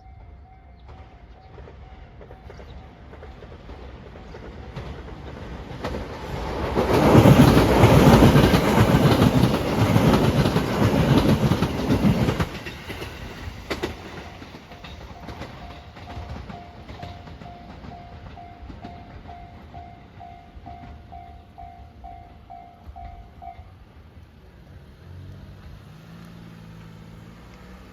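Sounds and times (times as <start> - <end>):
crossing warning bell: 0.0 - 4.9, 12.5 - 23.9
train rumble and wheel clatter: 0.0 - 27.9.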